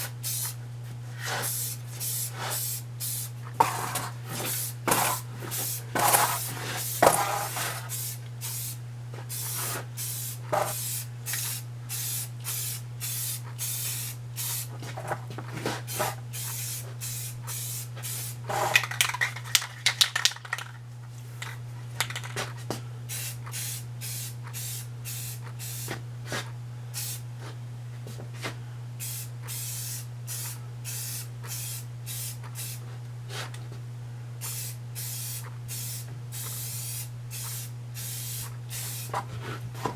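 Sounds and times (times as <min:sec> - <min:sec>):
spray paint can spraying: 0:00.2 - 0:00.5, 0:01.4 - 0:14.7, 0:15.9 - 0:20.7, 0:22.0 - 0:22.4, 0:23.1 - 0:25.9, 0:29.0 - 0:32.8, 0:34.4 - 0:39.1
clatter of clicks: 0:21.4 - 0:22.4.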